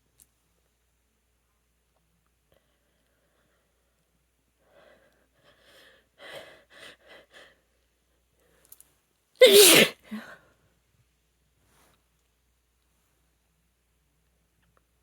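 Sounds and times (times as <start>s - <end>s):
person sneezing: 9.4s - 10.1s.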